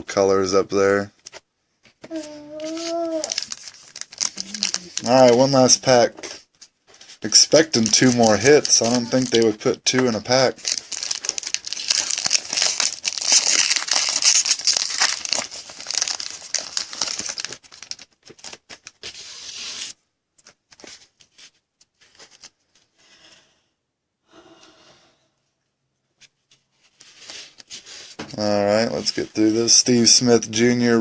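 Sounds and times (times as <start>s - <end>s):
wrapper tearing and crinkling: 2.1s - 6.0s, 7.3s - 19.9s.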